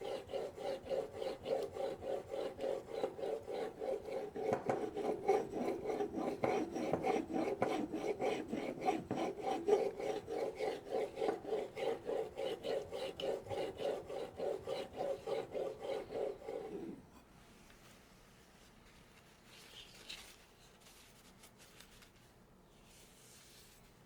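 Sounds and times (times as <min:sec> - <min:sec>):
knife scraping on whetstone: 0:00.0 - 0:17.0.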